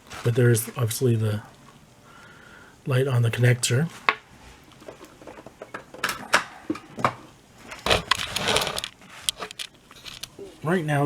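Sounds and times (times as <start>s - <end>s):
cable rustle: 7.6s - 10.7s.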